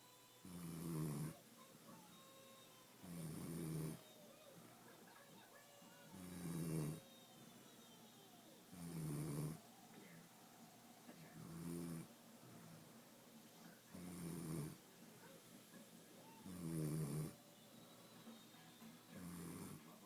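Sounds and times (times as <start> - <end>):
person snoring: 6.2 - 7.0.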